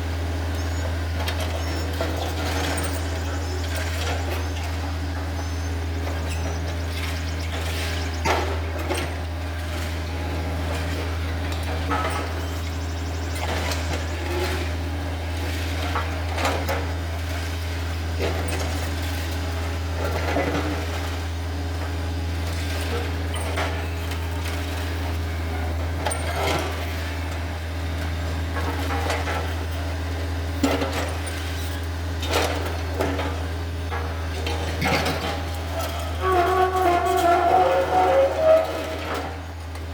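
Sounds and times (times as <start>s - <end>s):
excavator diesel engine running: 0.0s - 39.9s
steel bucket clanking on concrete: 32.4s - 39.6s.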